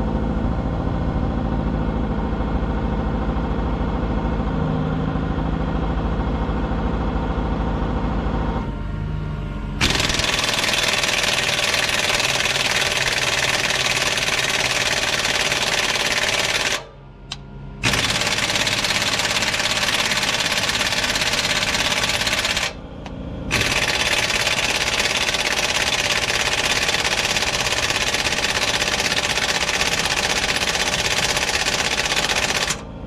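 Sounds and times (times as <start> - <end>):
engine clattering: 9.8 - 32.9.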